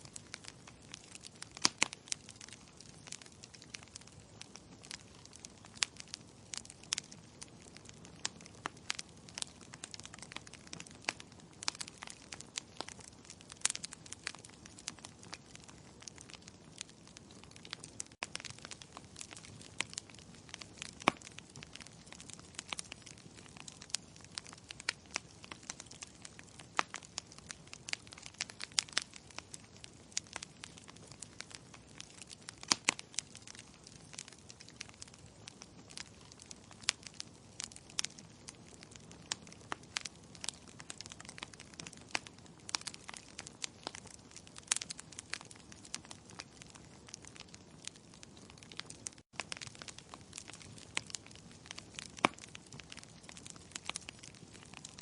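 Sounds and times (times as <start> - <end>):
soft steady hiss: 0.0 - 10.2
logs crackling in fireplace: 0.0 - 55.0
sharp fire pops: 0.1 - 55.0.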